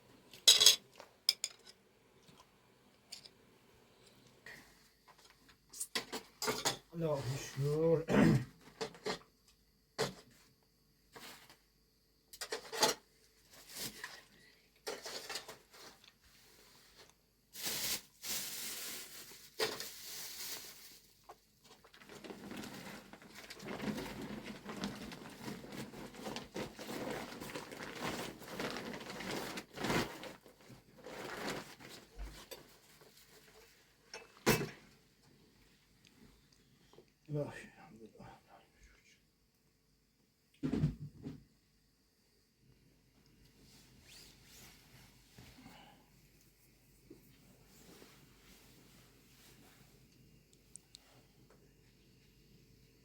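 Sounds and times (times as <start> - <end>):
rustling: 13.3 - 34.0.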